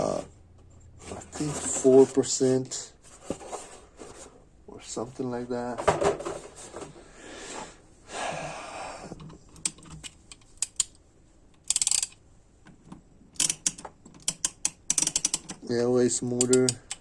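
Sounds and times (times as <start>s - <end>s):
torque wrench ratchet clicking: 11.6s - 12.2s, 13.4s - 15.6s.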